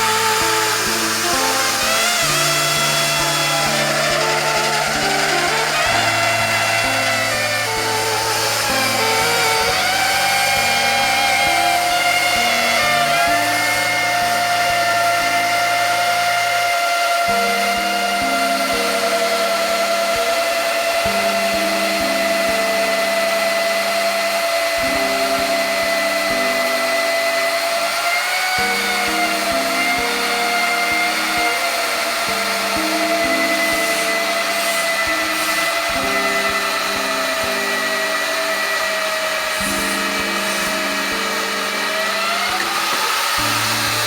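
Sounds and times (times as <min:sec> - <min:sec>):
background music: 0:00.0 - 0:44.0
magnetic drill motor whining: 0:00.0 - 0:44.0.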